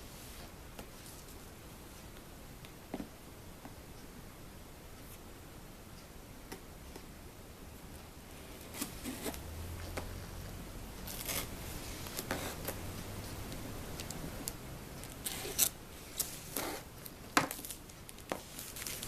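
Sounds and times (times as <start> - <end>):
cardboard and plastic scraping: 8.6 - 9.4.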